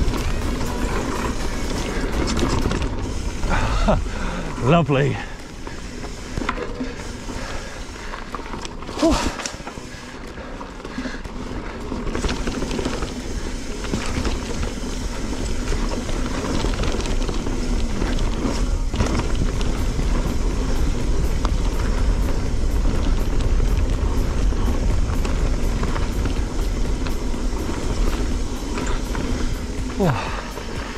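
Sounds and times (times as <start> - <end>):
bike tyre and frame rattle: 0.0 - 30.9
wind rumble on microphone: 14.3 - 30.9.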